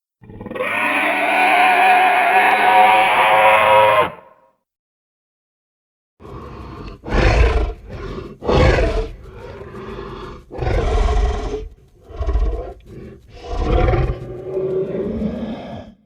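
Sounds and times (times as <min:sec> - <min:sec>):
deep creature roaring: 0:00.2 - 0:04.4, 0:06.2 - 0:16.0.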